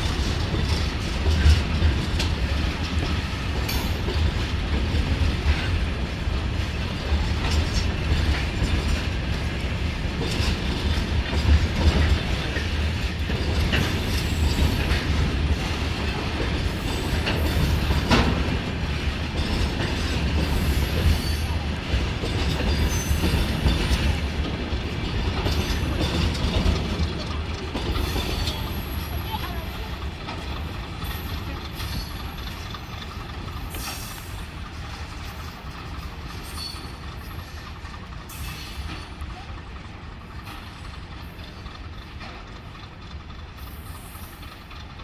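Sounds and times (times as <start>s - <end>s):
freight train rumbling: 0.0s - 45.0s
wheels clacking over rail joints: 0.0s - 45.0s.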